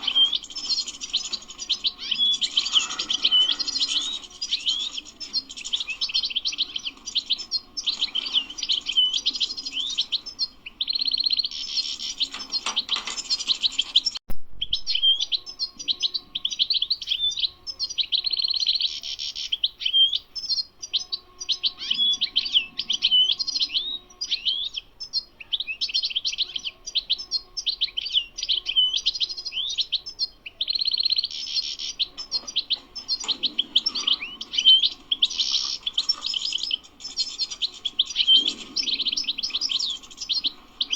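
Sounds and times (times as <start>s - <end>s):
goldfinch twittering song: 0.0s - 40.9s.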